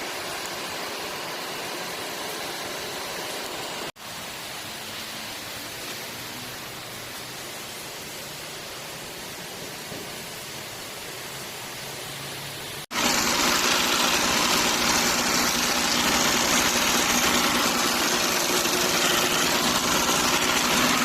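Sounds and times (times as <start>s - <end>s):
diesel engine running: 12.9s - 21.0s
timing gear noise: 12.9s - 21.0s.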